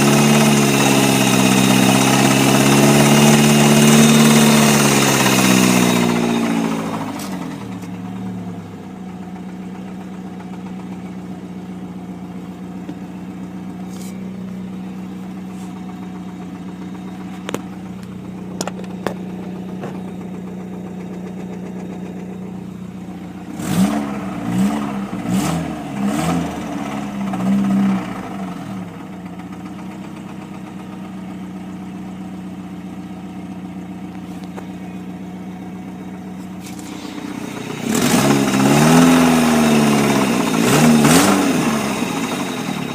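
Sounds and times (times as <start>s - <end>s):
engine revving: 0.0s - 9.1s, 13.8s - 29.9s, 36.6s - 42.9s
car engine idling with rod knock: 0.0s - 23.6s, 27.2s - 38.6s.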